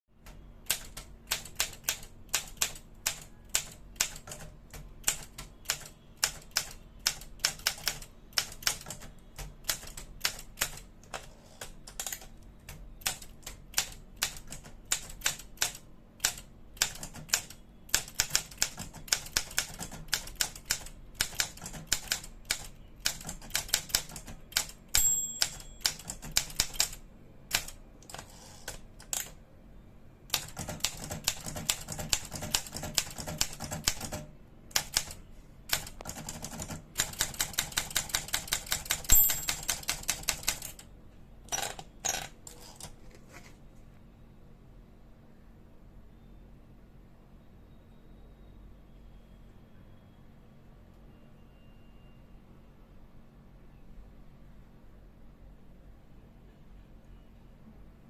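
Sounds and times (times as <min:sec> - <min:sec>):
typewriter key strikes: 0:13.0 - 0:27.0, 0:35.7 - 0:40.8
typewriter bell ring: 0:24.1 - 0:26.8, 0:36.2 - 0:40.8.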